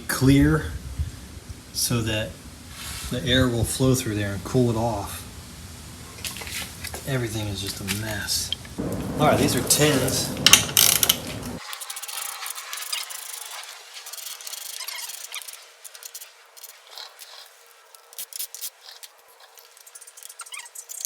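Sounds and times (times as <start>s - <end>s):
thin metal clicking and scraping: 10.5s - 21.0s.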